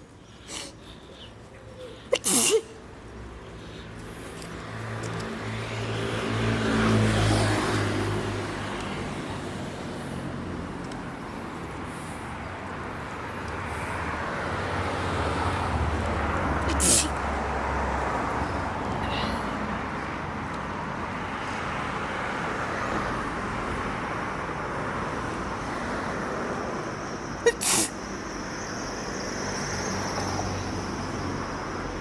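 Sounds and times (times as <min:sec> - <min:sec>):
street traffic: 0:00.0 - 0:32.0
person sneezing: 0:00.4 - 0:00.8, 0:01.7 - 0:02.8, 0:16.7 - 0:17.2, 0:27.4 - 0:28.0
motor vehicle passing: 0:02.7 - 0:12.0.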